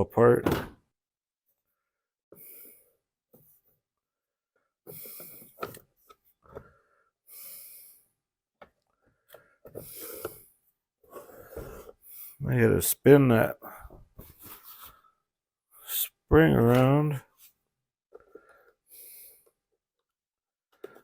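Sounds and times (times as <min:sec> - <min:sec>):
man breathing: 0:01.6 - 0:03.1, 0:04.6 - 0:05.7, 0:06.4 - 0:08.3, 0:08.9 - 0:12.4, 0:13.6 - 0:14.1, 0:18.2 - 0:19.6.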